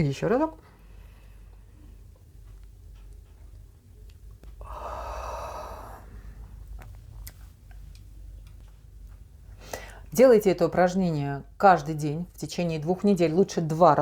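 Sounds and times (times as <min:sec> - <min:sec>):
woman yawning exhale: 0:04.6 - 0:06.3.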